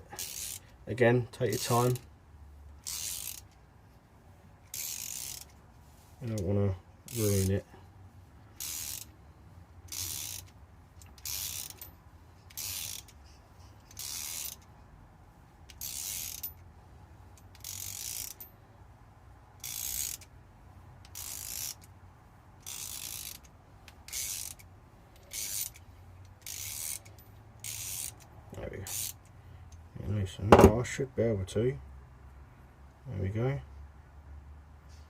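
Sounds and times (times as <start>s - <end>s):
ratchet wrench clicking: 0.2s - 0.7s, 2.8s - 3.6s, 4.7s - 5.6s, 7.1s - 7.6s, 8.6s - 9.2s, 9.9s - 11.9s, 12.5s - 13.2s, 13.9s - 14.7s, 15.7s - 16.6s, 17.4s - 18.5s, 19.6s - 20.3s, 21.0s - 21.9s, 22.6s - 29.3s.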